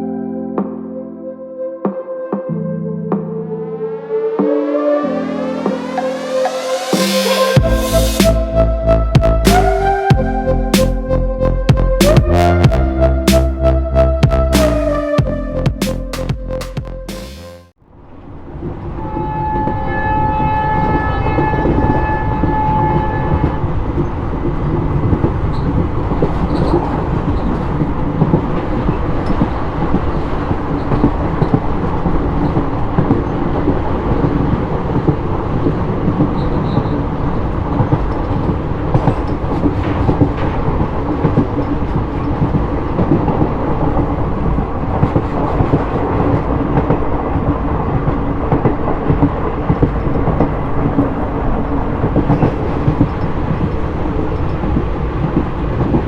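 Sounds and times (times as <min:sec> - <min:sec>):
locomotive horn blast: 0:04.9 - 0:16.2, 0:18.9 - 0:23.9
train rumbling: 0:05.6 - 0:10.9, 0:17.9 - 0:56.0
wheels clattering on rails: 0:18.5 - 0:56.0.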